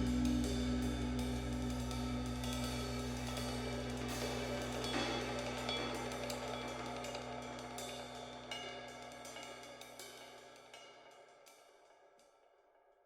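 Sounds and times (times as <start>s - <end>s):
music with drum kit: 0.0s - 9.4s.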